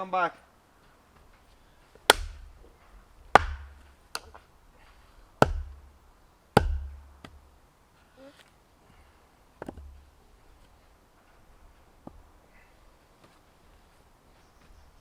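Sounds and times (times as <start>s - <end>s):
axe chopping wood: 2.0s - 2.7s, 3.3s - 4.5s, 5.4s - 5.9s, 6.6s - 7.4s.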